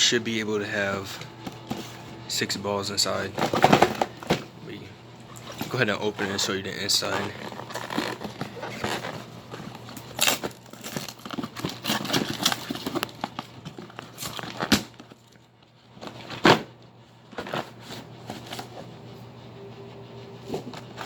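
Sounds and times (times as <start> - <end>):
cardboard rustling and crinkling: 1.0 - 2.2, 5.4 - 19.0.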